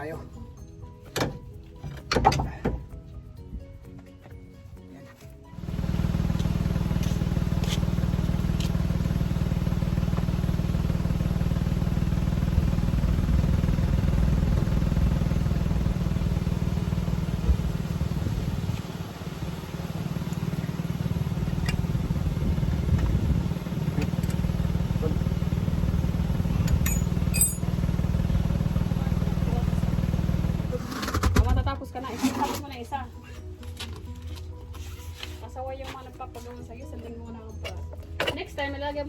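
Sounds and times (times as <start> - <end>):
engine idling: 5.5 - 31.2.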